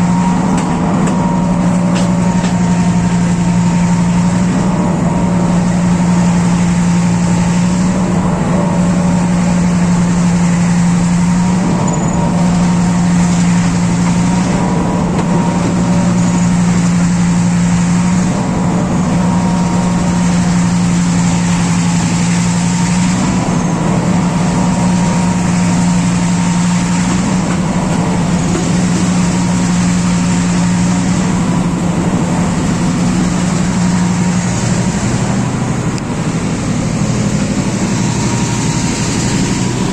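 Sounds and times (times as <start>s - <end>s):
diesel locomotive engine droning: 0.0s - 39.9s.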